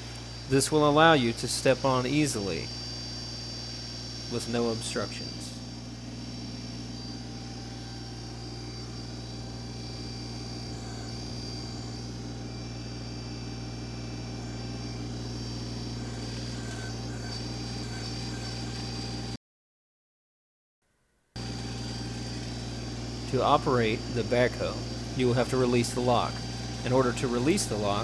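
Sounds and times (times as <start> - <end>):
diesel tractor engine running: 5.6 - 19.3, 21.4 - 28.0.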